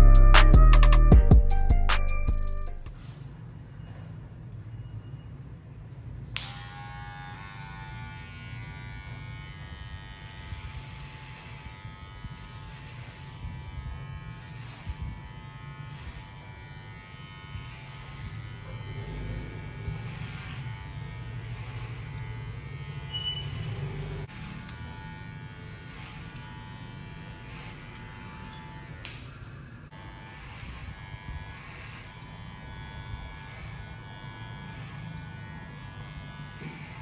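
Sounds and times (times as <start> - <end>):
electric hair clipper buzzing: 6.4 - 37.0.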